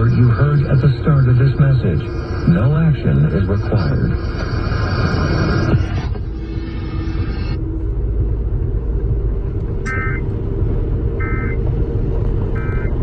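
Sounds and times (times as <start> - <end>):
electronic data burst squawks: 0.0 - 4.1, 9.9 - 10.2, 11.2 - 11.6, 12.6 - 13.0
car cabin road rumble: 0.0 - 13.0.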